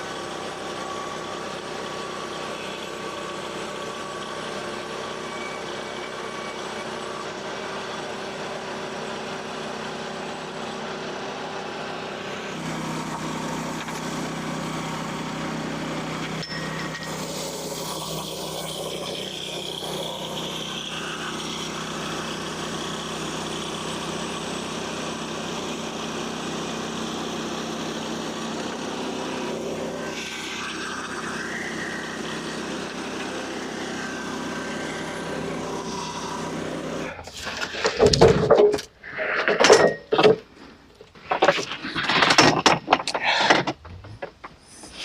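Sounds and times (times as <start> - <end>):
engine running steadily: 0.0 - 45.0
loud knocks and clatters: 37.3 - 40.5, 41.2 - 44.6.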